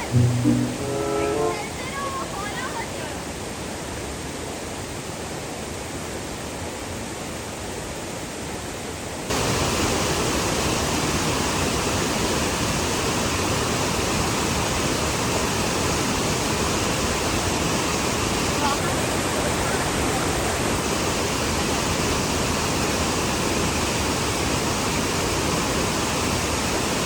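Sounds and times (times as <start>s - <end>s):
waterfall roaring: 9.3s - 26.7s.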